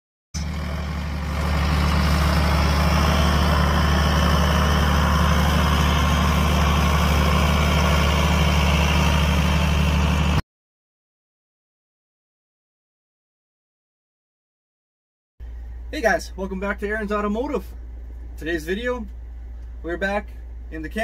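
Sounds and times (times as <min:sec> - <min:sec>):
engine idling: 0:00.4 - 0:10.4.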